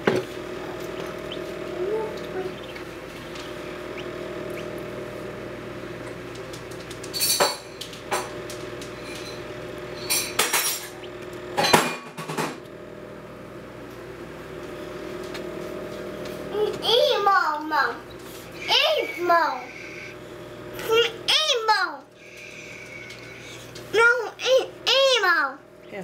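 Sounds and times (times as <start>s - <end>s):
low electrical hum: 0.0s - 26.0s
dishes clinking and clattering: 7.1s - 8.4s, 10.0s - 11.0s.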